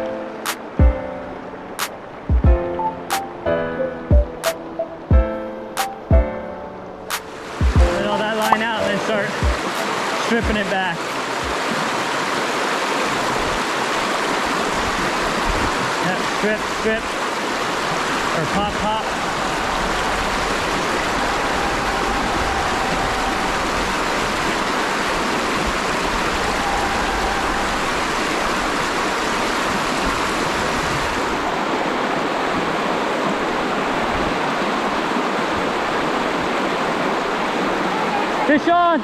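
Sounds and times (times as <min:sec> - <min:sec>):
creek water rushing: 0:00.0 - 0:39.0.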